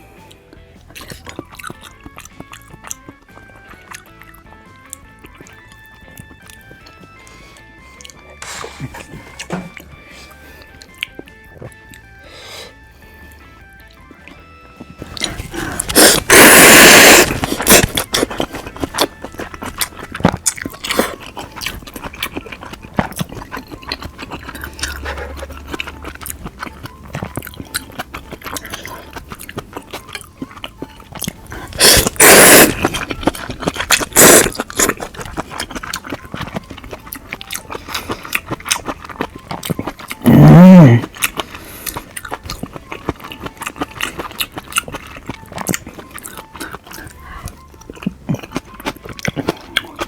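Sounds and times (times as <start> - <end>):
wet chewing: 0.3 - 12.3, 13.0 - 50.0
loud slurps: 15.0 - 20.1, 31.5 - 35.5
mouth clicks: 15.0 - 50.0.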